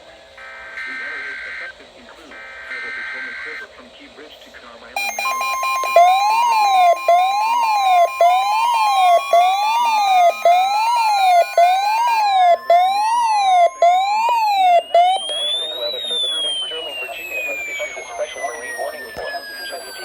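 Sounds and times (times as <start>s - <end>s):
electronic siren sweeping: 5.0s - 20.0s
steady attention tone: 5.0s - 20.0s.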